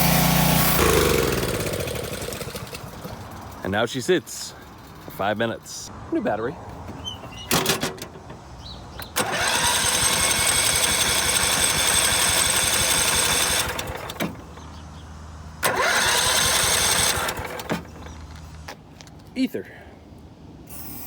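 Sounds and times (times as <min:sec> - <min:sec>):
starter motor cranking engine: 0:00.0 - 0:03.6, 0:09.0 - 0:14.8, 0:15.6 - 0:18.3.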